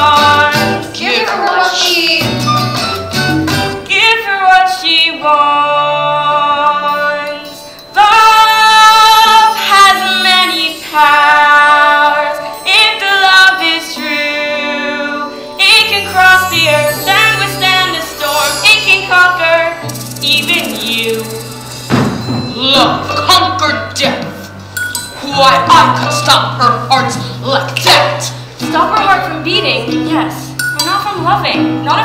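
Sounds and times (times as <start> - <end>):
girls singing: 0.0 - 2.3, 3.9 - 19.8
musical accompaniment: 0.0 - 32.0.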